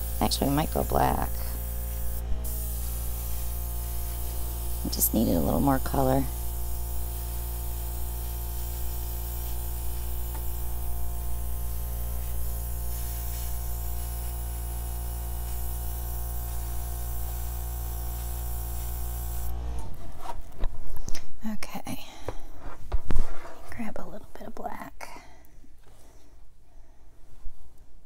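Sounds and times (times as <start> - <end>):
air spraying hiss: 0.0 - 19.5
airbrush compressor running: 0.0 - 19.8.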